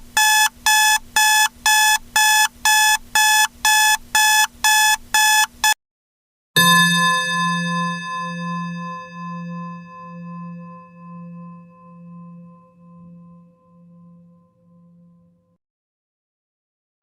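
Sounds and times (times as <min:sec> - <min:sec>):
bell-like chime ringing: 0:06.6 - 0:15.3.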